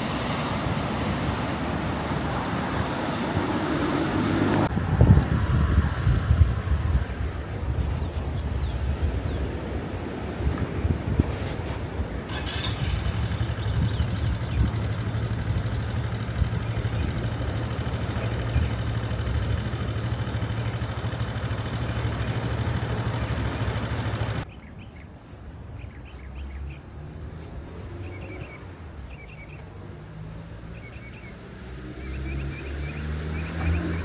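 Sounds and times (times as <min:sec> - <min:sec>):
vehicle engine running: 0:12.3 - 0:24.5.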